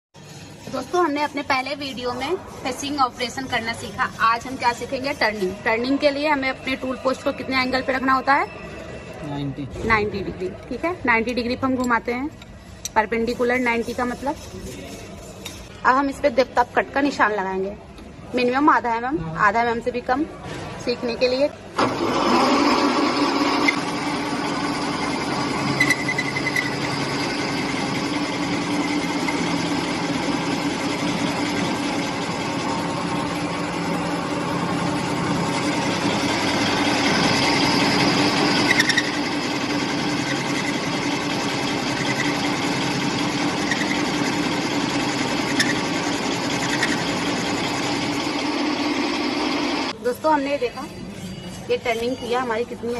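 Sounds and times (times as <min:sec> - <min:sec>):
lathe turning: 0:00.2 - 0:07.4, 0:21.8 - 0:50.0
high-pitched squeaks: 0:24.8 - 0:29.6, 0:35.6 - 0:44.5, 0:45.4 - 0:47.5, 0:50.6 - 0:52.9.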